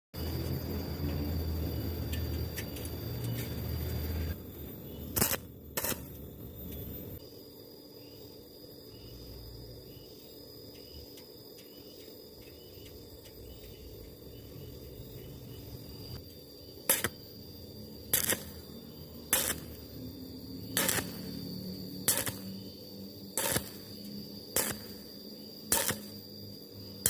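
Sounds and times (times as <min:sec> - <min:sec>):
welding arc bursts: 0:05.1 - 0:06.2, 0:16.9 - 0:17.2, 0:18.1 - 0:18.6, 0:19.3 - 0:19.9, 0:20.7 - 0:21.4, 0:22.0 - 0:22.6, 0:23.4 - 0:25.1, 0:25.7 - 0:26.2.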